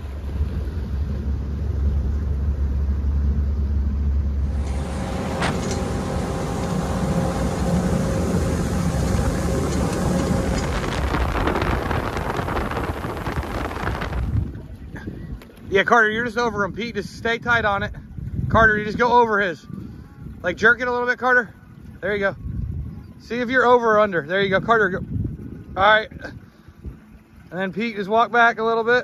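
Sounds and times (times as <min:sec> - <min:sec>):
steady hum: 0:00.0 - 0:15.4
wind noise: 0:00.0 - 0:20.7, 0:21.8 - 0:23.2, 0:24.3 - 0:27.1
boat motor running: 0:00.0 - 0:29.0.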